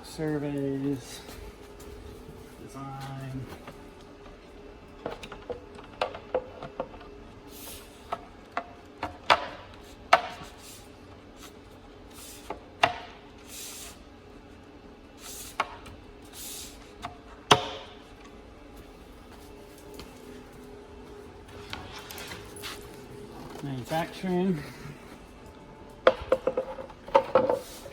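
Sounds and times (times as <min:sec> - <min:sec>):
panels knocking and clicking: 0:08.6 - 0:10.5, 0:26.0 - 0:27.7.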